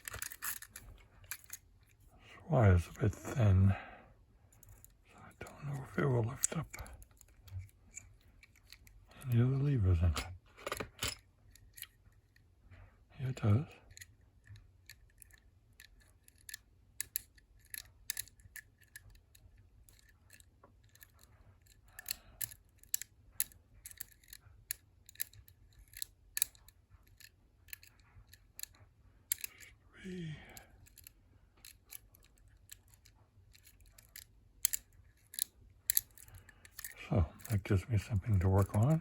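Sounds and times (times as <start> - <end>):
lock pick clicking in lock: 0.0 - 1.7, 13.9 - 29.7, 30.8 - 37.6
person murmuring: 30.0 - 30.7, 37.0 - 39.0.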